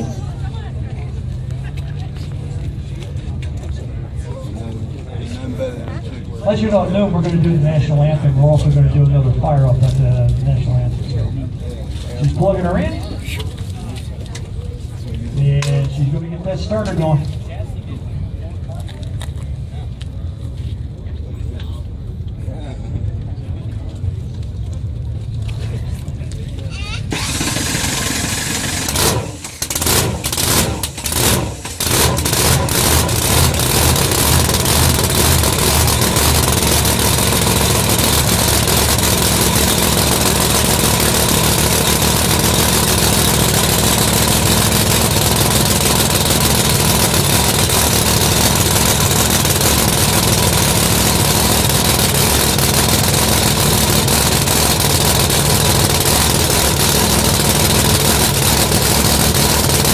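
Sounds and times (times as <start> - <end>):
car engine starting and idling: 23.9 - 59.9.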